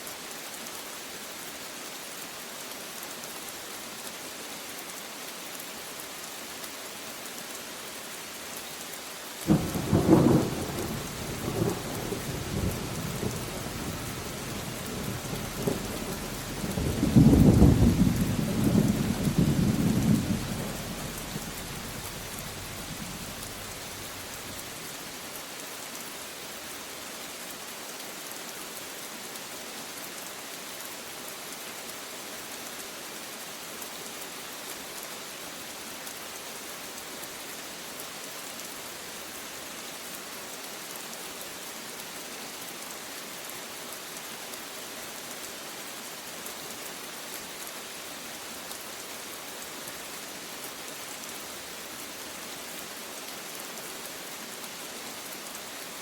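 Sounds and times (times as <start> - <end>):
steady rain falling: 0.0 - 56.0
thunder rumbling: 9.5 - 24.3.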